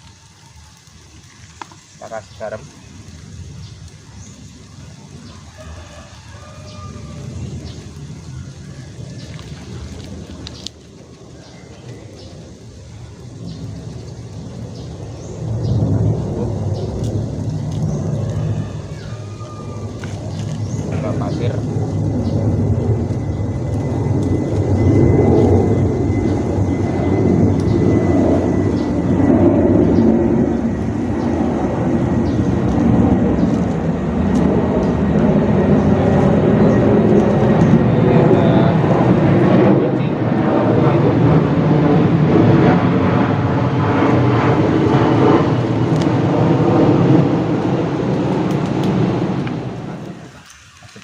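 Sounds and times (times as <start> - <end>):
loud engine drone: 11.9 - 50.5.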